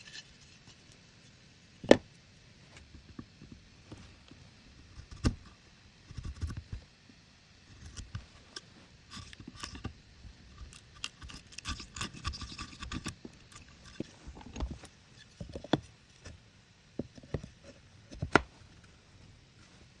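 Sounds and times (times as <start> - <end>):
wood and tools scraping: 7.8 - 16.4.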